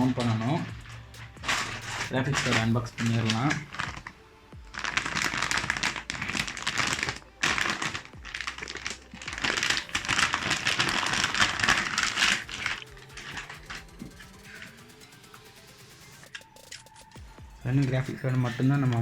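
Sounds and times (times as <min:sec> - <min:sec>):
plastic packaging crinkling: 0:00.0 - 0:14.7.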